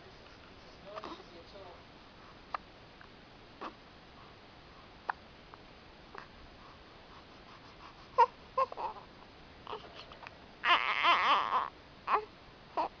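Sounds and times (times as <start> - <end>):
infant hiccuping: 3.6 - 3.8
infant fussy cry: 8.2 - 9.0, 9.7 - 13.0.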